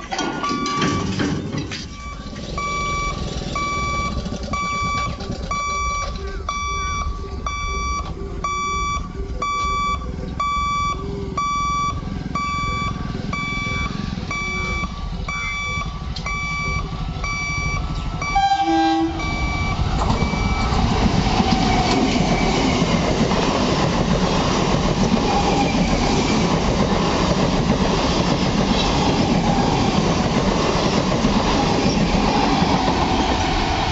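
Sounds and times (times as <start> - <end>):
train rumble and wheel clatter: 0.0 - 33.9
level crossing beeper: 0.2 - 21.0
train horn blast: 18.3 - 19.5.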